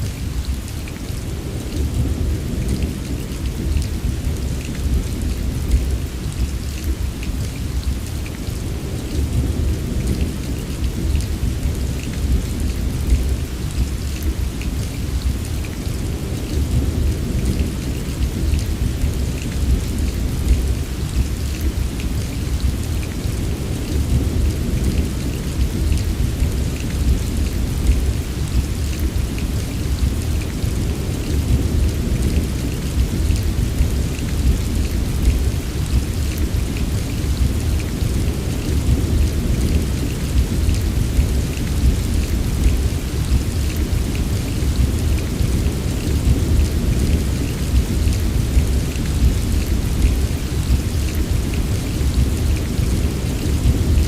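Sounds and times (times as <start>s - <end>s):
steady rain: 0.0s - 54.0s
low rumble of thunder: 0.1s - 54.0s.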